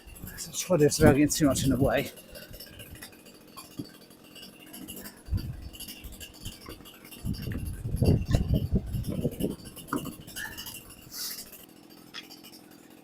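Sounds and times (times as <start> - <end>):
light metallic clinks: 0.0 - 13.0
dull thumps: 6.4 - 10.8.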